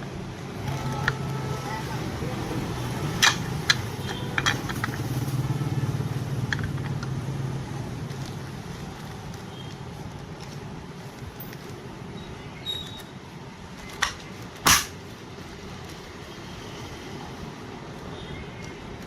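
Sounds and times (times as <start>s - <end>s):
sharp clicks or rattles: 3.1s - 5.5s, 6.3s - 7.2s, 13.8s - 15.0s.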